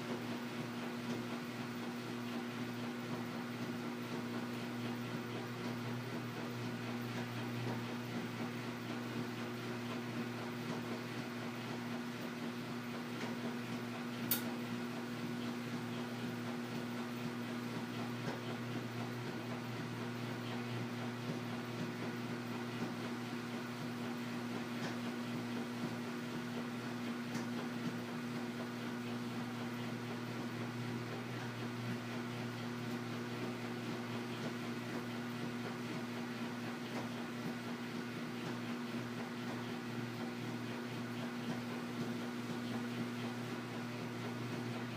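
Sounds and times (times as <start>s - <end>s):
washing machine motor hum: 0.0s - 44.9s
sharp click: 14.3s - 14.5s.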